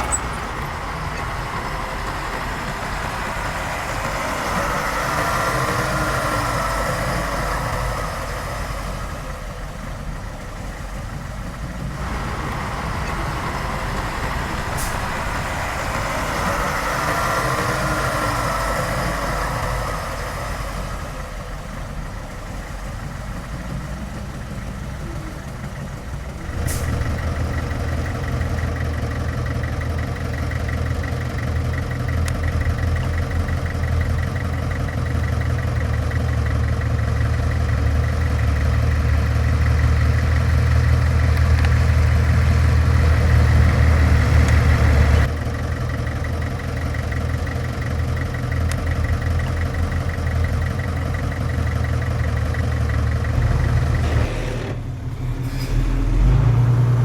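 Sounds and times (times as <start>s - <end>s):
heavy diesel engine running: 0.0s - 57.0s.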